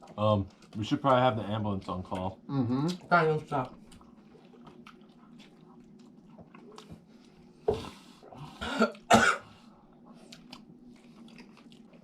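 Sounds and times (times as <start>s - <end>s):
person coughing: 8.6s - 9.5s.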